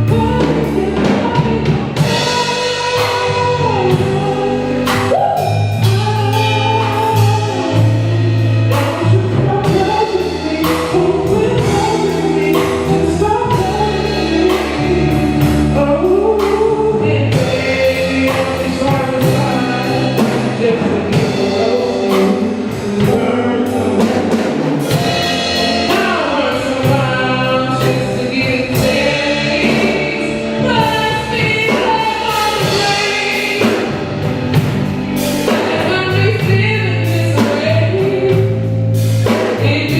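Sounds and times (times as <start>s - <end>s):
bass line: 0.0s - 39.9s
drum kit: 0.0s - 39.9s
group of singers: 0.0s - 39.9s.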